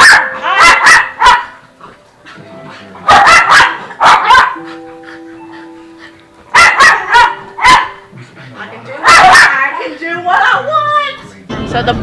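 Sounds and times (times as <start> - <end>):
dog barking: 0.0 - 1.6, 3.0 - 4.7, 6.5 - 8.0, 9.0 - 9.9
quiet background music: 0.0 - 12.0.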